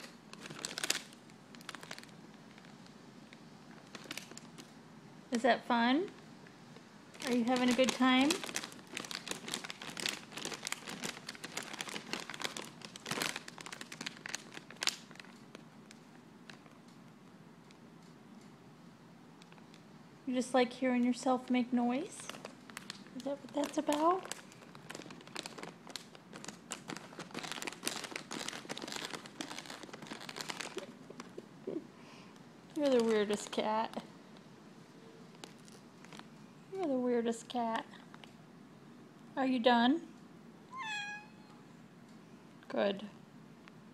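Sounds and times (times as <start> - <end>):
plastic bag crinkling: 0.0 - 2.9, 3.7 - 4.7, 7.1 - 16.9, 21.9 - 31.4, 32.7 - 34.0, 35.3 - 36.4.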